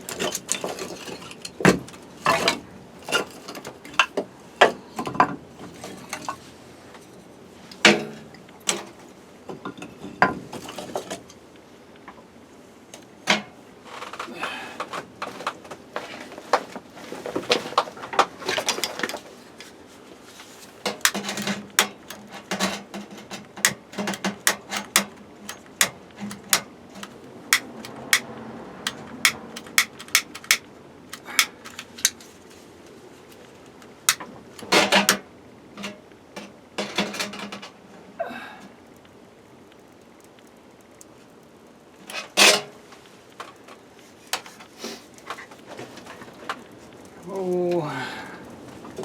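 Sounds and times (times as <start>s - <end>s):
clicks and knocks of handling: 20.4s - 37.8s, 39.0s - 47.2s.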